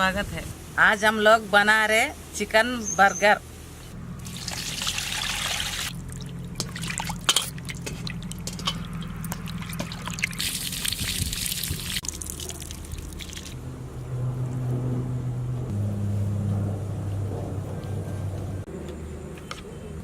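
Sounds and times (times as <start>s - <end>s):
water pouring and trickling: 4.2s - 13.7s.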